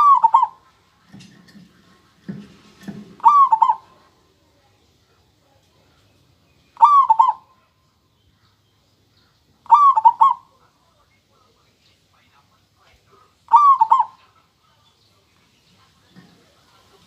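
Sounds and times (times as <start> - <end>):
dove cooing: 0.0 - 4.2, 6.8 - 7.7, 9.6 - 10.6, 13.5 - 14.4.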